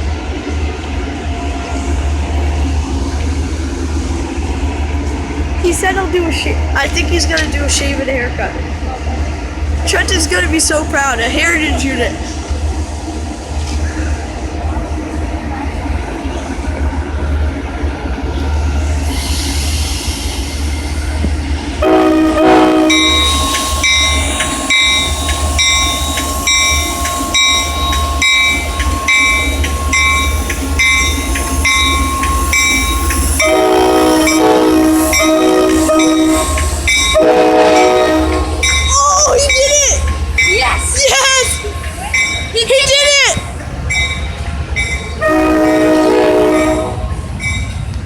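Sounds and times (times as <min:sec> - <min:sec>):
locomotive engine rumble: 0:00.0 - 0:48.0
locomotive horn blasts: 0:21.8 - 0:27.4, 0:33.4 - 0:38.7, 0:45.2 - 0:47.1
bell ringing: 0:22.9 - 0:33.5, 0:38.6 - 0:45.2.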